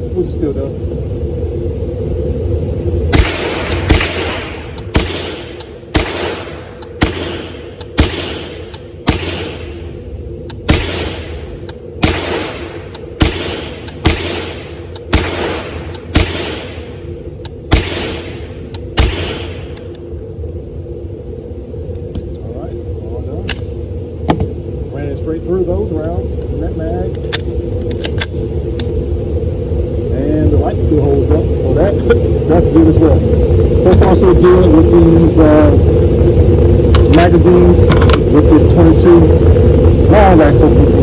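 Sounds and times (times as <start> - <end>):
rifle shots echoing: 3.1 - 9.9, 10.6 - 17.0, 17.7 - 19.8.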